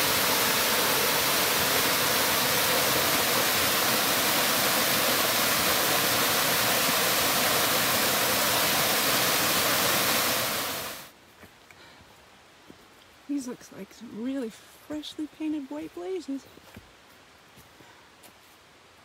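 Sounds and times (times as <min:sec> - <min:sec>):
waterfall rushing: 0:00.0 - 0:11.1.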